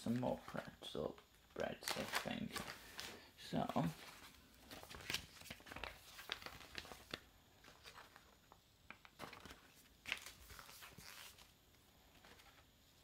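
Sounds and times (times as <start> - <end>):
plastic packaging crinkling: 1.5 - 3.2, 3.8 - 11.5.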